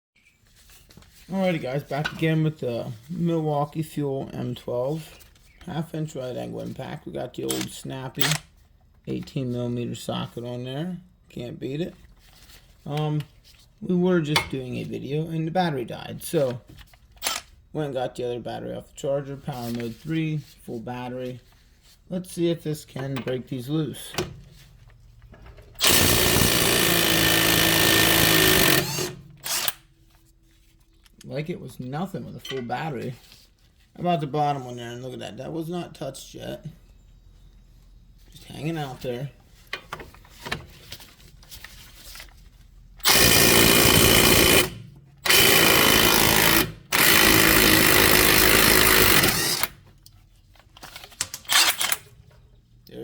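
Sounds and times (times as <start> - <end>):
impact wrench hammering: 25.8 - 29.8, 43.0 - 49.7.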